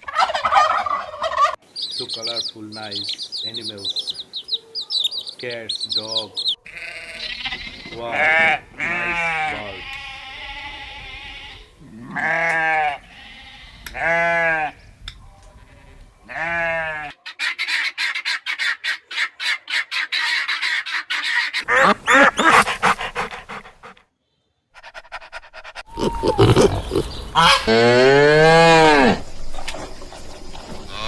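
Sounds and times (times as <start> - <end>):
poultry chattering: 0.0 - 14.8, 16.3 - 24.0, 24.8 - 31.0
goat or sheep bleating: 6.3 - 14.7, 25.9 - 29.2.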